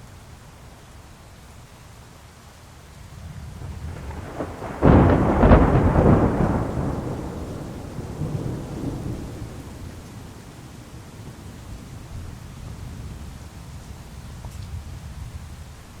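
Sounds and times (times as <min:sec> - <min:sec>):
rain falling: 0:00.0 - 0:16.0
thunder crack and rumble: 0:03.1 - 0:13.6.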